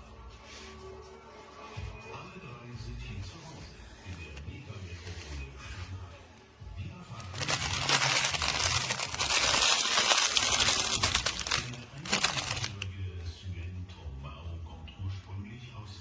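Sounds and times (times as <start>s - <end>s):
crinkly material crumpling: 7.2s - 12.9s.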